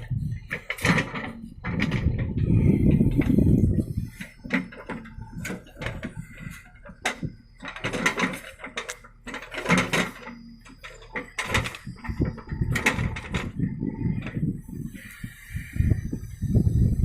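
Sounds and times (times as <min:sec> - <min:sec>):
clattering and clinking: 0:04.3 - 0:14.4.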